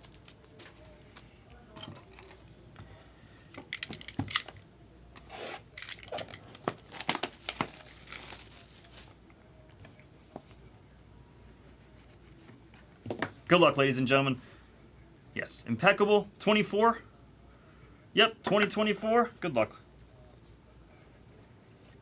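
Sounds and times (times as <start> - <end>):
plastic shrink-wrap crinkling: 5.7 - 9.2.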